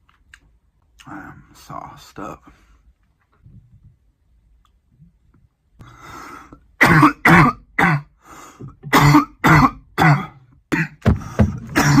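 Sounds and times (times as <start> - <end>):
man coughing hard: 6.8 - 8.2, 8.8 - 12.0.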